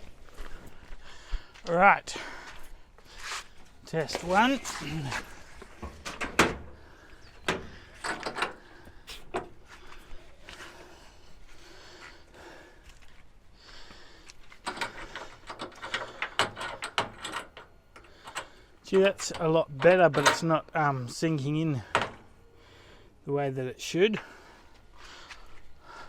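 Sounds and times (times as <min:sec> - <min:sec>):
metal knocks and clunks: 0:05.6 - 0:09.7, 0:14.6 - 0:20.7, 0:21.8 - 0:22.3
small metal clicks and rattles: 0:14.6 - 0:20.5.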